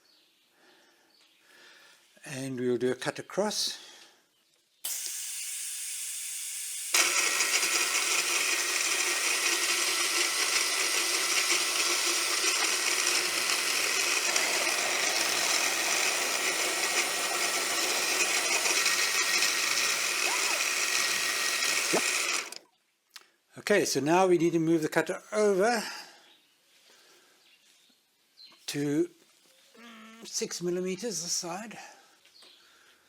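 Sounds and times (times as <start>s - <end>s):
milling machine cutting steel: 4.9s - 22.6s.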